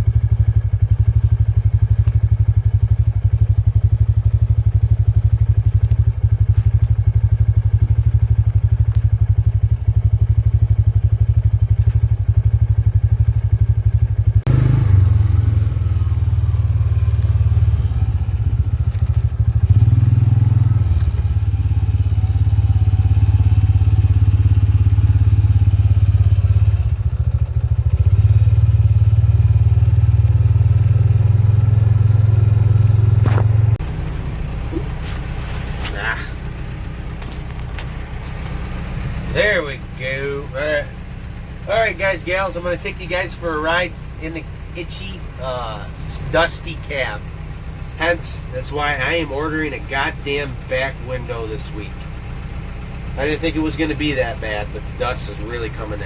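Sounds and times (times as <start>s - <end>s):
tractor engine running: 0.0s - 56.0s
baler clatter and thumps: 32.6s - 39.4s.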